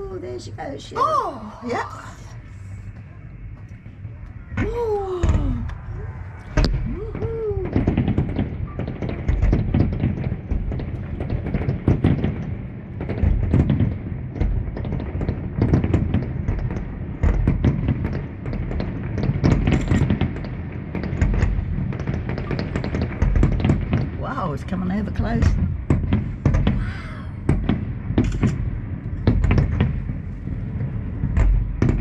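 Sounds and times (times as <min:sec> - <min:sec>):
fireworks bangs and crackles: 0:01.6 - 0:32.0
person cheering: 0:06.8 - 0:07.9.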